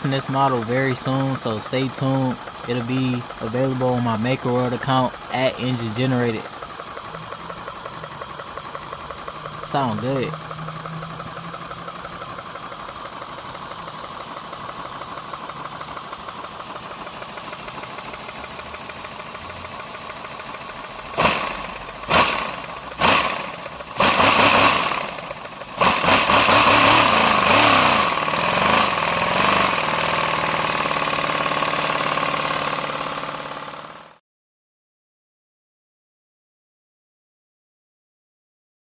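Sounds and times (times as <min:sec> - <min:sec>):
compressed-air engine pulsing exhaust: 0:00.0 - 0:34.2
short loud air bursts: 0:21.1 - 0:29.4.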